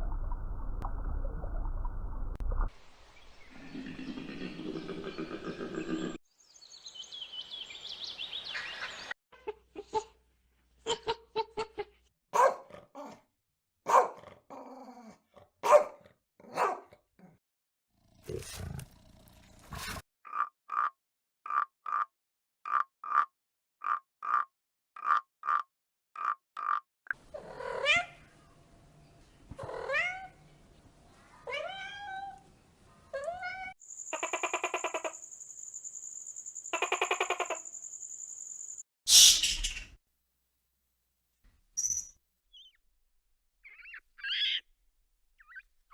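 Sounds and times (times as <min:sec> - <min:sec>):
animal calls: 0:34.1 - 0:35.2, 0:36.7 - 0:37.7.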